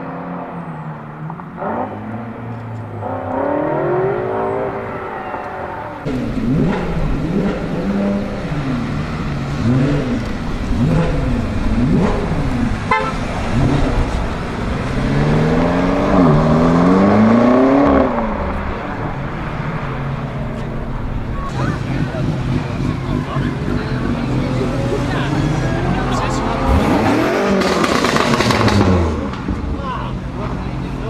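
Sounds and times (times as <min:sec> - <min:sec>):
car engine revving: 0:00.0 - 0:31.0
exhaust pop: 0:26.6 - 0:29.8.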